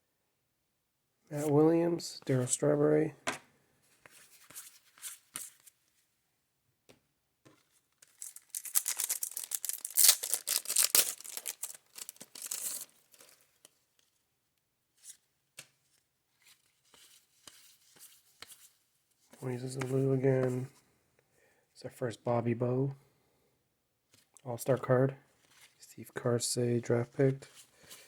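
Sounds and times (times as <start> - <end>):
cards ticking while handled: 8.0 - 12.9
wrapper tearing and crinkling: 8.0 - 13.4.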